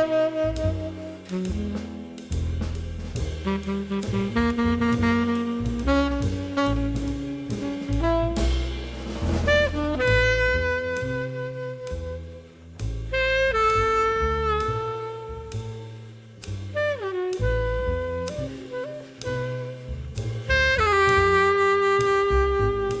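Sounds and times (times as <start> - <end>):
saxophone long held notes: 0.0 - 2.0, 3.4 - 8.7, 9.5 - 12.4, 13.1 - 15.8, 20.5 - 23.0
bass and drums: 0.0 - 23.0.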